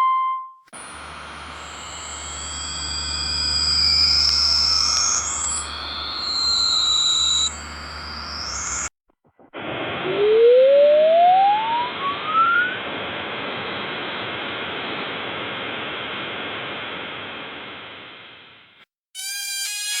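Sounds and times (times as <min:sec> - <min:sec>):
whistling tone rising in pitch: 0:01.3 - 0:08.9, 0:10.2 - 0:12.8.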